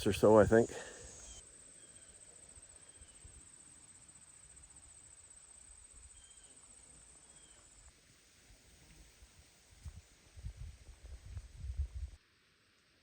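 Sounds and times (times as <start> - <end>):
insects trilling: 0.0 - 7.9.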